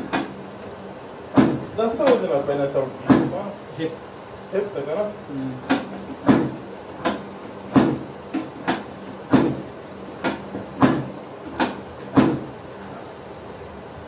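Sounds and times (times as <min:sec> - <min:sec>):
sharp knocks: 0:00.0 - 0:00.4, 0:01.3 - 0:02.2, 0:03.0 - 0:03.4, 0:05.7 - 0:12.5.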